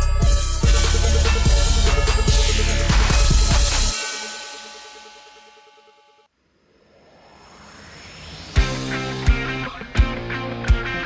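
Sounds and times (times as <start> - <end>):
music with drums and heavy bass: 0.0 - 4.8, 8.6 - 11.0.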